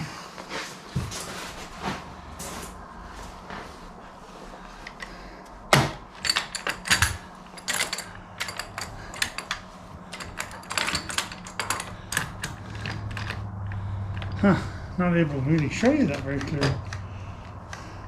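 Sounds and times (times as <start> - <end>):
hand tools clicking on metal: 6.2 - 14.5, 15.2 - 18.0.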